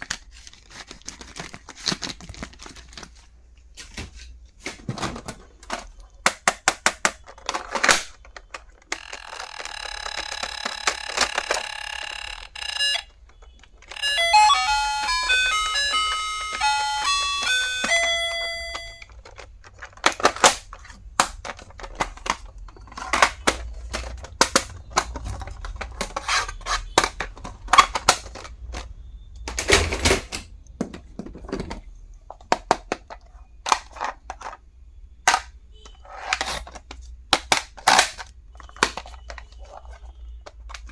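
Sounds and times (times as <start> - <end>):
buzzing alarm tone: 8.9 - 13.1, 13.9 - 19.1
beeping tune: 9.0 - 13.1, 13.9 - 19.1
plastic handling knocks: 30.8 - 34.4.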